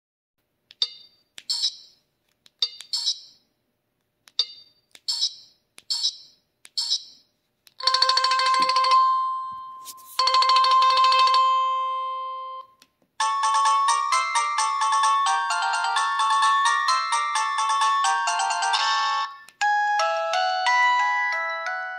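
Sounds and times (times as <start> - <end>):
phone ringtone chirps: 0.8 - 2.0, 2.6 - 3.4, 7.8 - 21.9
electronic phone ring: 7.8 - 21.9
multi-note ringtone melody: 7.8 - 21.9.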